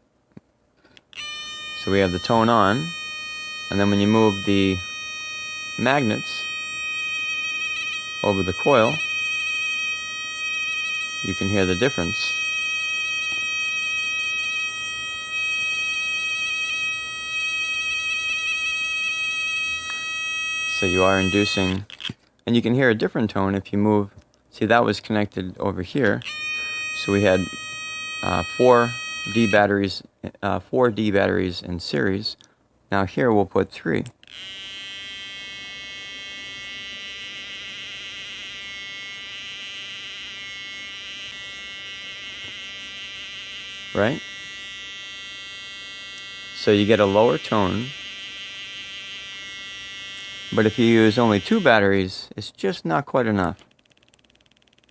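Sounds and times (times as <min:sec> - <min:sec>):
high buzzing oscillator tone: 0:01.2 - 0:21.8, 0:26.2 - 0:29.8, 0:34.3 - 0:52.0.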